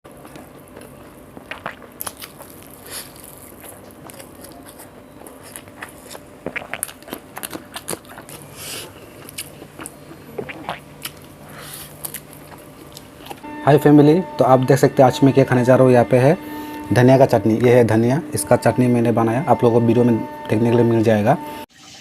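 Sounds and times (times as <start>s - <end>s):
person chewing food: 0.1s - 13.5s
wet mouth clicks: 1.4s - 13.4s.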